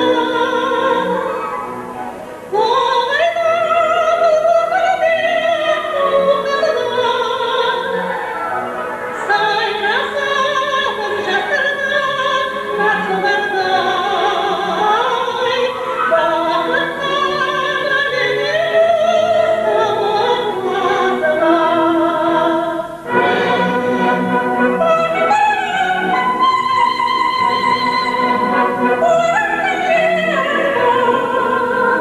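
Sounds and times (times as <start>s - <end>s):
soprano singing operatically: 0.0s - 1.6s, 2.5s - 8.4s, 9.2s - 32.0s
orchestral accompaniment: 23.0s - 32.0s.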